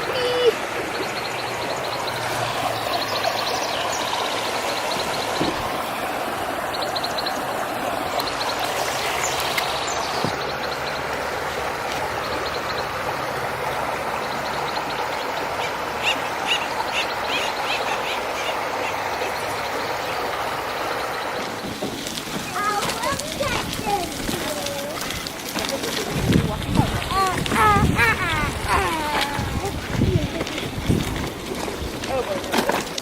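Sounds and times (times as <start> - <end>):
bird calling: 0.0 - 21.5, 27.0 - 30.7
stream water rushing: 0.0 - 33.0.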